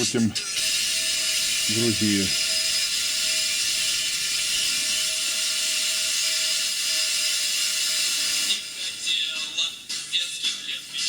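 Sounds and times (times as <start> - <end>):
radio static hiss: 0.0 - 5.2
music from radio: 0.0 - 11.0.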